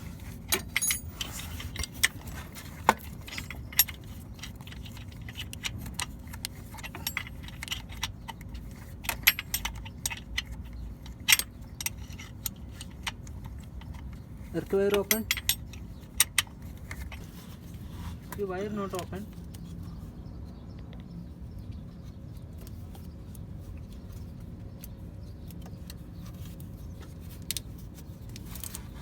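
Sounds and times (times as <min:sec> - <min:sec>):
metal tools clicking and clinking: 0:00.4 - 0:17.2.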